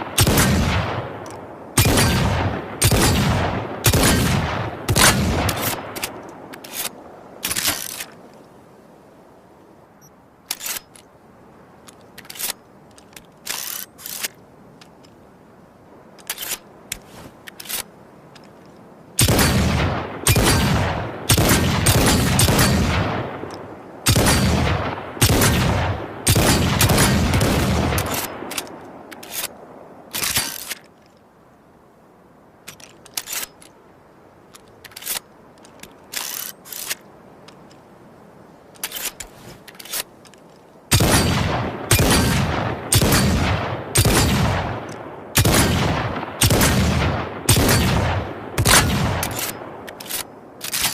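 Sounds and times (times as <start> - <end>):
revolver gunshots: 0.0 - 1.2, 1.8 - 6.2, 19.2 - 23.5, 24.1 - 28.6, 40.9 - 49.8.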